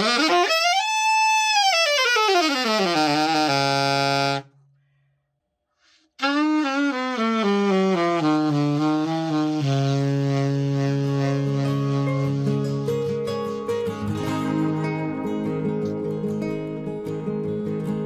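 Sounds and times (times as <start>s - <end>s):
alto saxophone playing scales: 0.0s - 4.6s, 6.2s - 15.4s.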